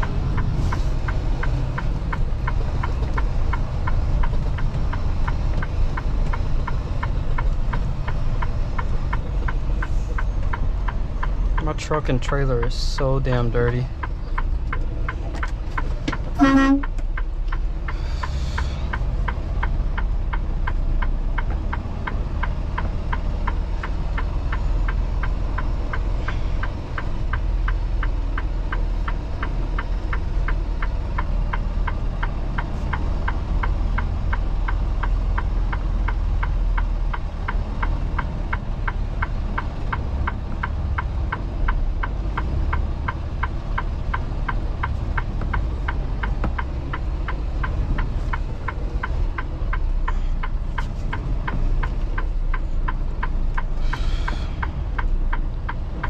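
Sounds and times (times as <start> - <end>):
diesel truck engine rumbling: 0.0 - 56.0
fast regular ticking: 0.0 - 56.0
short pitched horn toot: 16.4 - 16.9
brief air hiss: 53.8 - 54.6.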